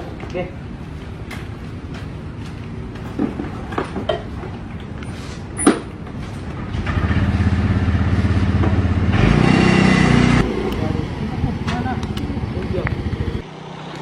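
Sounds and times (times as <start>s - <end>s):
motorcycle engine running: 6.6s - 13.5s.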